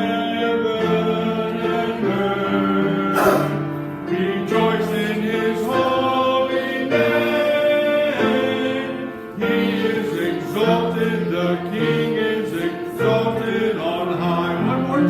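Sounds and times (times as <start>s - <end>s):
congregation singing a hymn: 0.0s - 15.0s.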